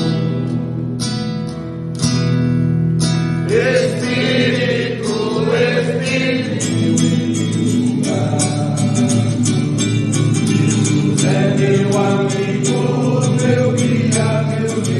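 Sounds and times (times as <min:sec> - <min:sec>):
strummed guitar chords: 0:00.0 - 0:14.9.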